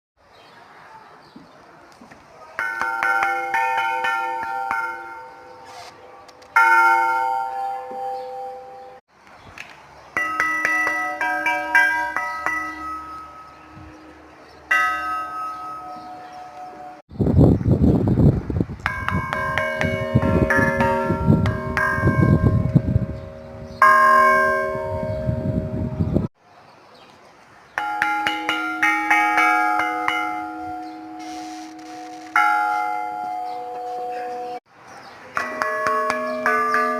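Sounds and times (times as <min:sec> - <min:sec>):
bell striking: 0:02.6 - 0:05.7, 0:06.5 - 0:09.0, 0:10.2 - 0:17.0, 0:18.9 - 0:26.3, 0:27.8 - 0:34.6, 0:35.4 - 0:36.9
church bells ringing: 0:02.6 - 0:09.0, 0:10.2 - 0:17.0, 0:18.9 - 0:26.3, 0:27.8 - 0:34.7, 0:35.3 - 0:36.9.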